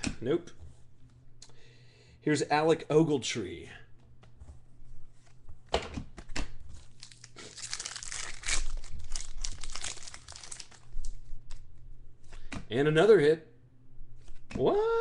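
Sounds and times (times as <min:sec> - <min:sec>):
plastic foil wrapper crinkling: 0:06.8 - 0:11.2.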